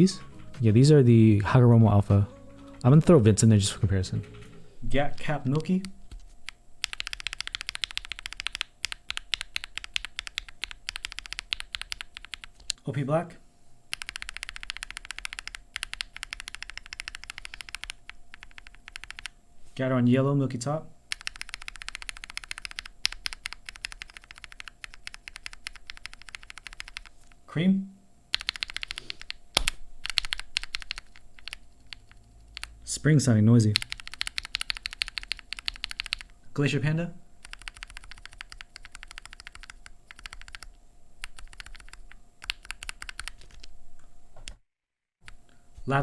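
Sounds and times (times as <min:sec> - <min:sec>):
fast typing on mechanical keyboard: 0:04.2 - 0:06.0, 0:06.8 - 0:12.8, 0:13.9 - 0:19.4, 0:21.1 - 0:27.1, 0:28.3 - 0:32.8, 0:33.7 - 0:36.3, 0:37.4 - 0:43.7.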